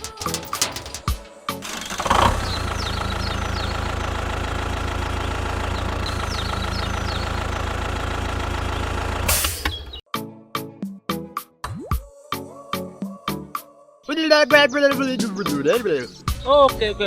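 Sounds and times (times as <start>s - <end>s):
small engine idling with knocking: 0.0s - 2.5s.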